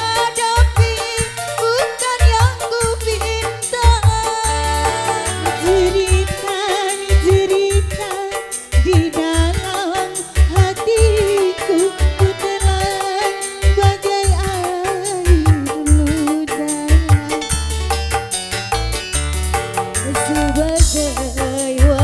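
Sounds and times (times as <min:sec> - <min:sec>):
keyboard dance music: 0:00.0 - 0:22.0.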